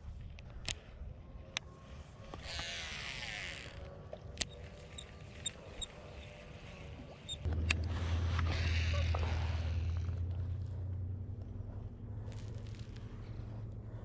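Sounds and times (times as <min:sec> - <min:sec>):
reel spool whirring: 0:00.7 - 0:14.0
sharp reel clicks: 0:01.5 - 0:10.0.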